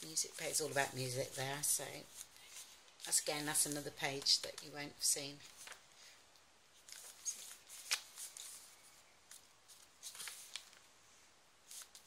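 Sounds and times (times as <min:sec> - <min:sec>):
paper pages rustling and flicking: 0:05.4 - 0:05.8, 0:06.8 - 0:10.9, 0:11.6 - 0:12.0.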